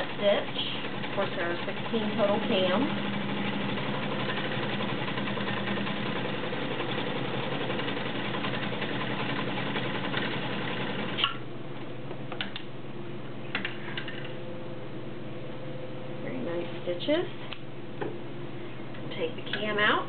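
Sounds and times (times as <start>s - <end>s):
sewing machine running: 0.0s - 11.2s.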